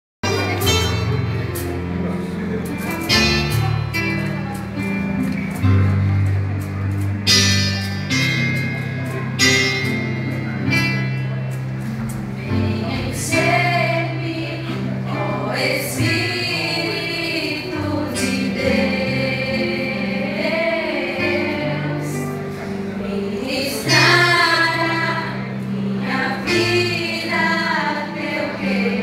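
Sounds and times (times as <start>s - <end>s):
instrumental backing: 0.2s - 29.0s
strummed chords: 0.2s - 29.0s
women singing gospel: 12.5s - 22.3s, 23.0s - 29.0s.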